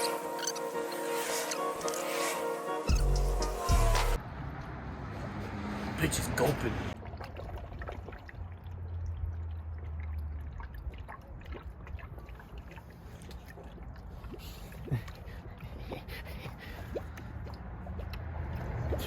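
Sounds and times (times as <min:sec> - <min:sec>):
coolant gurgling into radiator: 0:07.0 - 0:19.0
liquid dripping and bubbling: 0:07.0 - 0:19.0.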